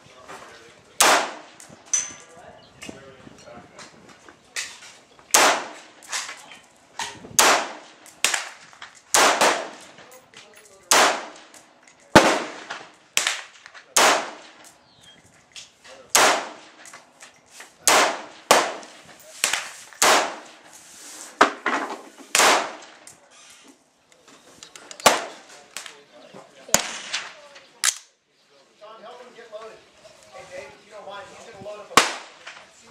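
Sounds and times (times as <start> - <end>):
gunshots with echo: 1.0 - 1.6, 5.3 - 6.0, 7.4 - 8.5, 9.1 - 9.9, 10.9 - 11.5, 12.1 - 14.6, 16.1 - 16.8, 17.8 - 20.5, 22.3 - 22.9.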